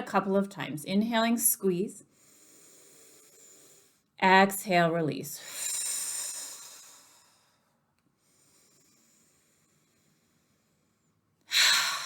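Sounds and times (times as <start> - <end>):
faint breath in: 2.0 - 4.1, 5.4 - 12.0
woman exhaling: 11.5 - 12.0.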